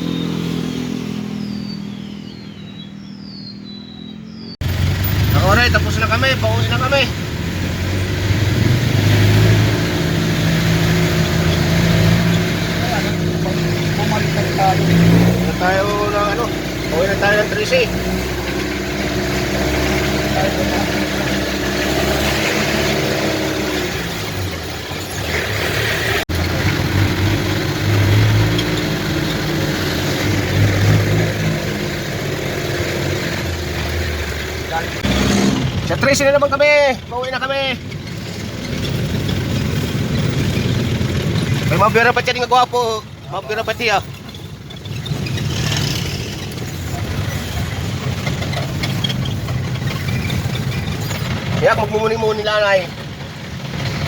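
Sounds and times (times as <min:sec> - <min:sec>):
vehicle engine running: 0:00.0 - 0:54.0.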